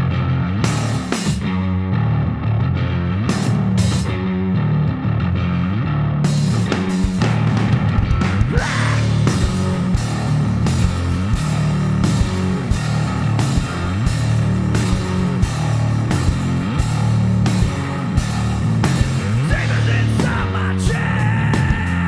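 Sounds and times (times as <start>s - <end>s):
bass guitar: 0.0s - 22.0s
distorted electric guitar: 0.0s - 22.0s
drums steady beat: 0.7s - 1.6s, 3.3s - 4.2s, 6.3s - 22.0s.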